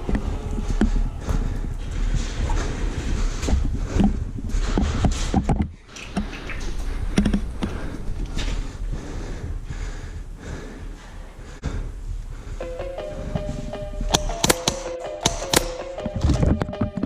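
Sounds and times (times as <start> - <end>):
irregular clicks and knocks: 0.0 - 8.8, 12.6 - 17.0
low rumble: 0.0 - 14.1.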